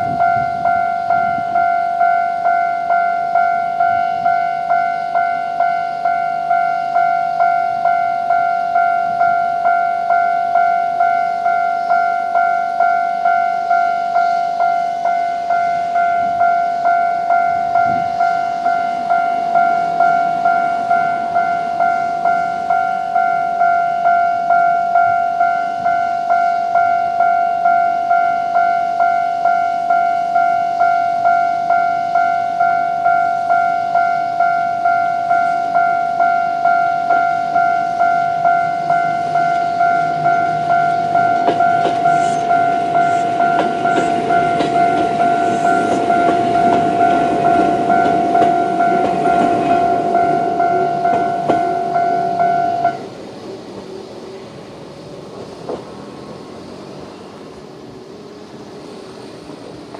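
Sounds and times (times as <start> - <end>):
level crossing bell ringing: 0.0 - 53.0
train wheels clattering: 35.4 - 54.0, 55.3 - 56.5.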